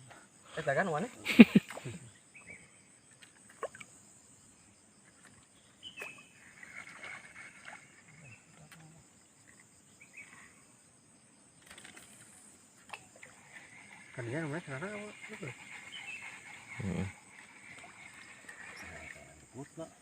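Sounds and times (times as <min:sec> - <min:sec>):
high-pitched insect drone: 0:11.7 - 0:20.0.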